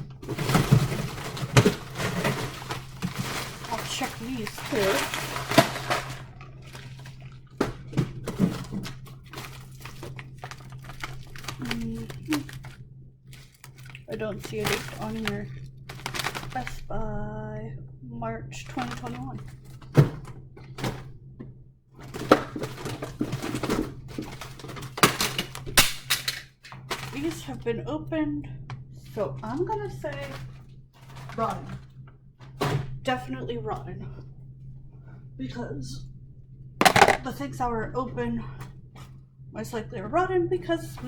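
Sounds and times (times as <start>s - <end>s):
steady low hum: 0.0s - 41.0s
packaging crinkling and rustling: 0.2s - 16.9s, 18.6s - 20.0s, 22.0s - 27.4s, 30.3s - 31.8s.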